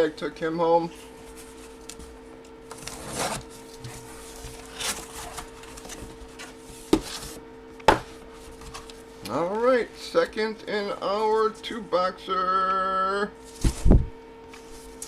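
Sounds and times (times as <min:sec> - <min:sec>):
faint steady hum: 0:00.0 - 0:15.0
cardboard rustling: 0:01.1 - 0:09.1.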